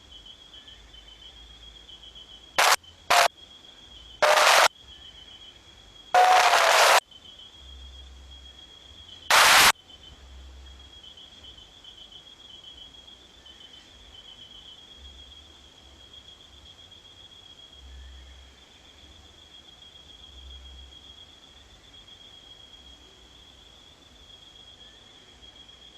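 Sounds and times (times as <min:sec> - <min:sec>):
crickets chirping: 0:00.0 - 0:25.9
loud bursts of hiss: 0:02.6 - 0:03.3, 0:04.2 - 0:04.7, 0:06.2 - 0:07.0, 0:09.3 - 0:09.7.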